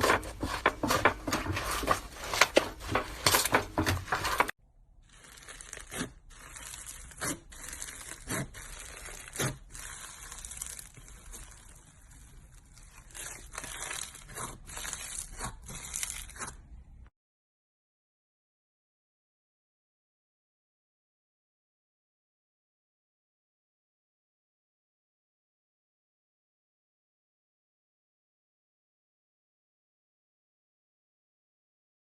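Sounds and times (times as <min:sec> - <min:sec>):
crunchy slime crackling: 0:00.0 - 0:16.6.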